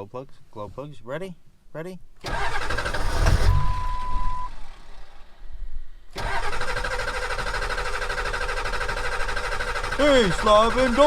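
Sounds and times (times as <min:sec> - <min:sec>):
diesel engine starting and idling: 0:02.2 - 0:11.0.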